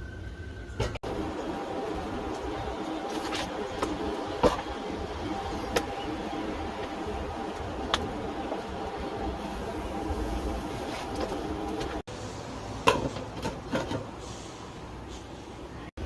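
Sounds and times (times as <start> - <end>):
steady hum: 0.0 - 12.8.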